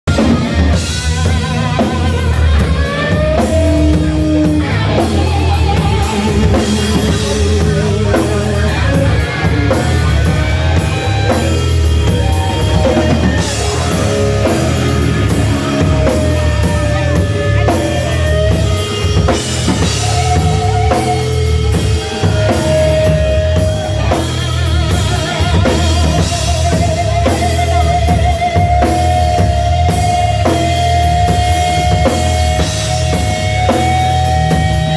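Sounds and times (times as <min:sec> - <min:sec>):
rock music with drums and guitar: 0:00.0 - 0:34.9.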